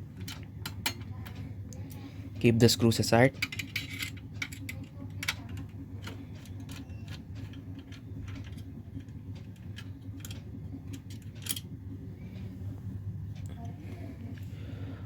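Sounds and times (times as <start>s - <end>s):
steady low hum: 0.0s - 15.0s
small metal parts clicking: 3.4s - 11.7s.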